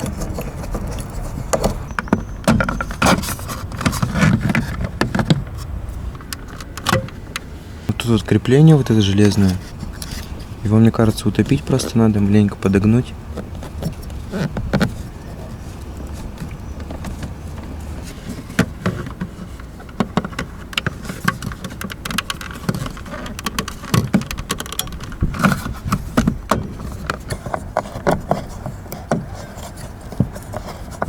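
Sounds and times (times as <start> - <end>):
low hum: 0.0 - 18.0
plastic trim clicks and rattles: 6.2 - 7.5, 19.8 - 28.4.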